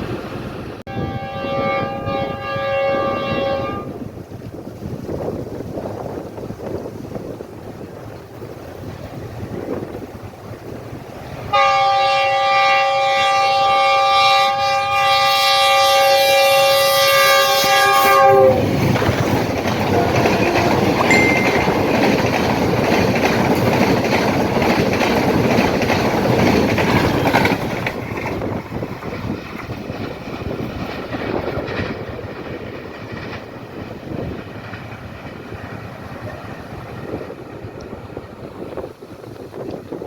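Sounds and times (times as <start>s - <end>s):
train horn chord: 0.9s - 4.0s, 11.5s - 18.7s, 19.8s - 21.9s
train wheels clattering over rails: 18.4s - 40.0s.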